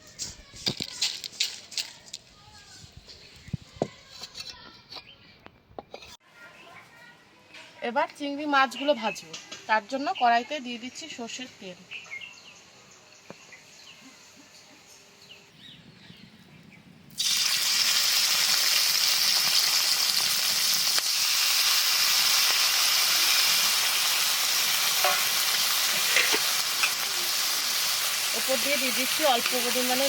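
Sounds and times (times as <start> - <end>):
prawns sizzling in hot oil: 17.1 - 30.0.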